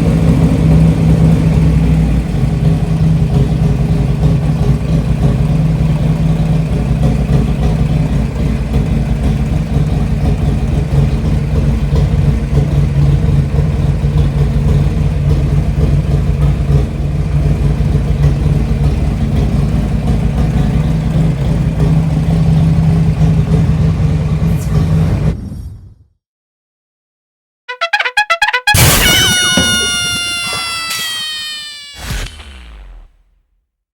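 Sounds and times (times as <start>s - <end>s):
motorcycle engine running loudly: 0.0s - 25.3s.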